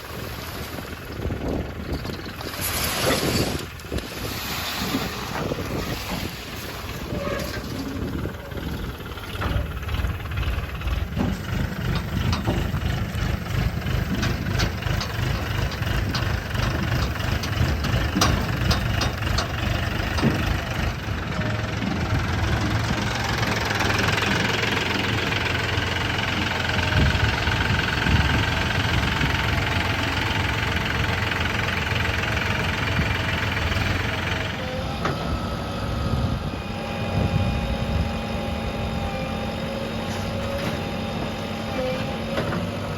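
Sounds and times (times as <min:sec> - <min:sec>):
heavy diesel machinery rumble: 0:00.0 - 0:42.9
sharp knocks and clatter: 0:10.8 - 0:20.7.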